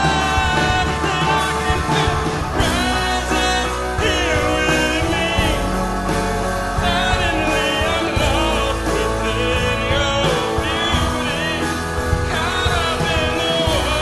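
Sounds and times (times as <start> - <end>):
person singing lead vocal: 0.0 - 14.0
rock band with guitars and bass: 0.0 - 14.0.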